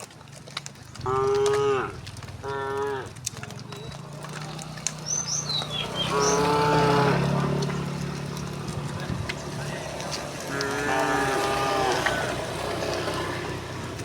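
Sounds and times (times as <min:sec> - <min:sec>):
cattle mooing: 0:01.0 - 0:07.8, 0:10.1 - 0:13.4.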